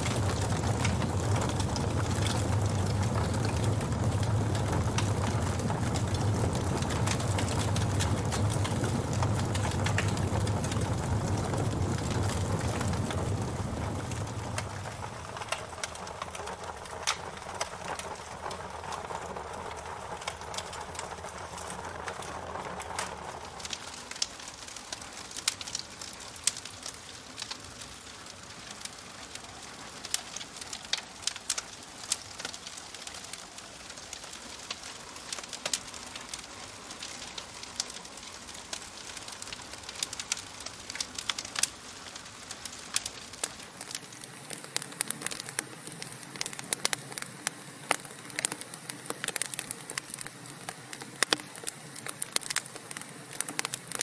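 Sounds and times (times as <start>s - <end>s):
low steady rumble: 0.0s - 23.6s
wood fire crackling: 0.0s - 54.0s.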